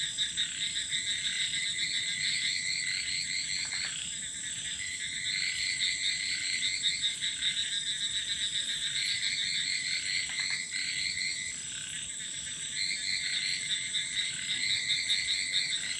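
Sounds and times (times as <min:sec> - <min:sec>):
crickets pulsed chirping: 0:00.0 - 0:15.9
crickets trilling: 0:00.0 - 0:15.9.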